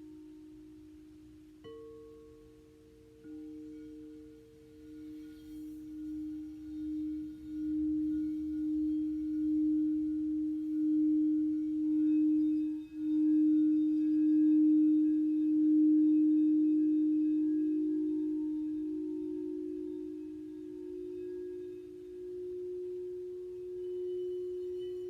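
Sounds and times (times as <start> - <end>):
singing bowl ringing: 0.0 - 25.0.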